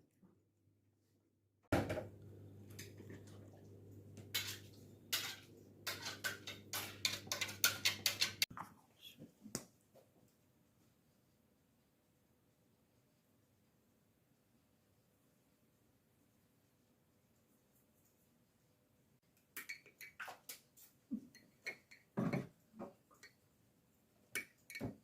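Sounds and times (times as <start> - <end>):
cutlery clinking against dishes: 4.3 - 8.5, 19.6 - 20.2, 21.3 - 22.5, 24.4 - 25.0.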